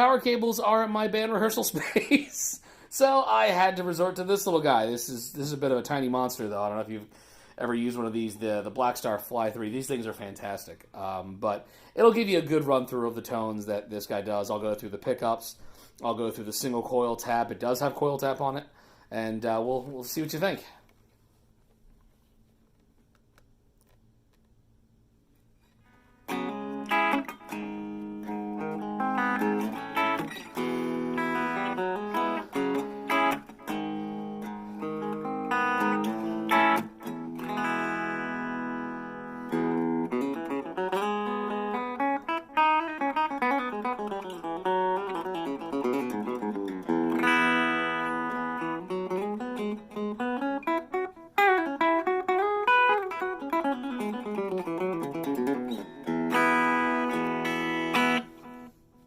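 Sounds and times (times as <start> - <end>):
electric guitar through small amp: 25.9 - 58.8.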